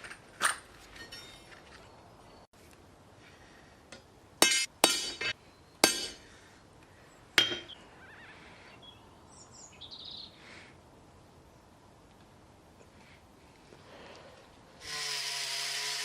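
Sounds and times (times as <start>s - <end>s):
hammer striking steel anvil: 3.9s - 6.3s, 7.4s - 7.7s.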